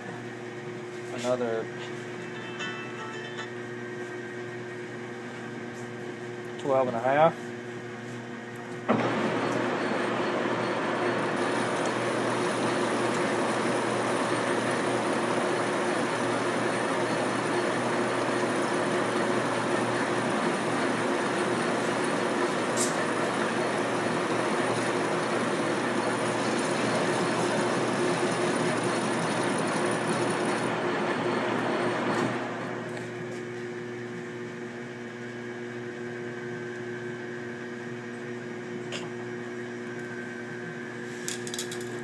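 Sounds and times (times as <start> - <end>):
lathe humming with gear whine: 8.8 - 41.0.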